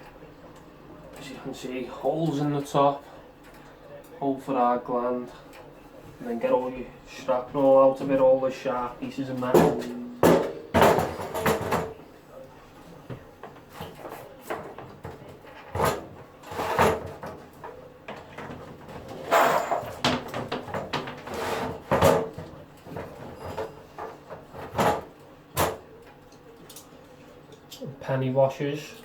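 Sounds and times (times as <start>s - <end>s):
metal enclosure knocking: 9.5s - 11.9s.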